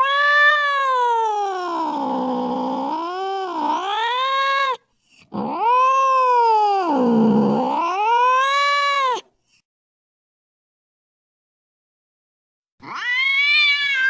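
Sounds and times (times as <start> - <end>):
cat yowling angrily: 0.0 - 9.2, 12.8 - 14.0.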